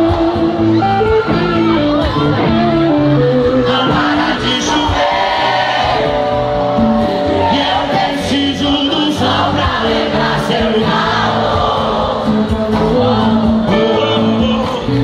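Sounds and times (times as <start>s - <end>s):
live band music: 0.0s - 15.0s
several voices singing together: 3.6s - 6.2s, 7.3s - 15.0s.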